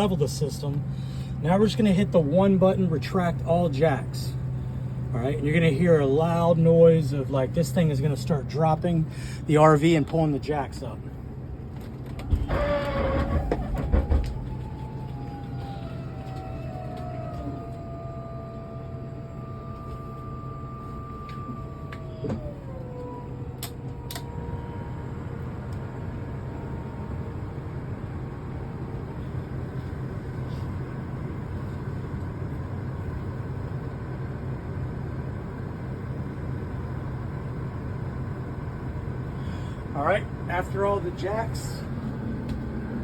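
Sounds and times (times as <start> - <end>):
engine running: 0.0 - 43.0
hydraulic pump whine: 11.5 - 31.7.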